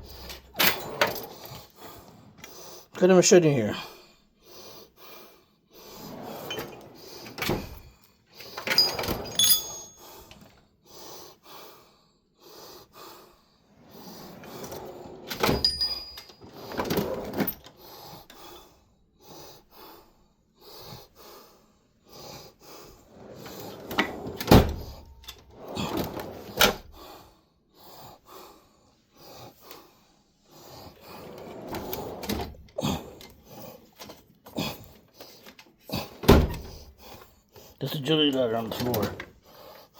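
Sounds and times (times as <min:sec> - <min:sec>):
tool chest drawers sliding: 0:06.0 - 0:07.8, 0:08.6 - 0:10.0, 0:13.9 - 0:17.8, 0:23.2 - 0:26.9, 0:31.2 - 0:33.4, 0:38.6 - 0:39.4.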